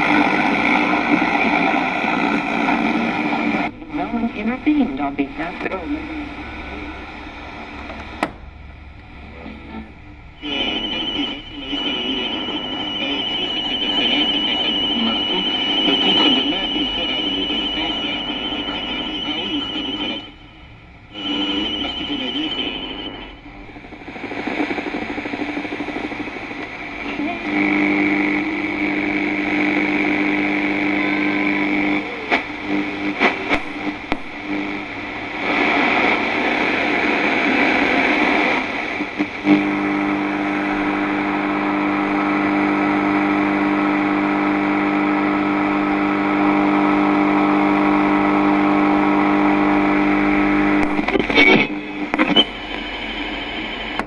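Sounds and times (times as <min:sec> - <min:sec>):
buzzing hum: 0:00.0 - 0:54.0
radio dial crackles and clicks: 0:00.0 - 0:54.0
radio static hiss: 0:00.0 - 0:54.0.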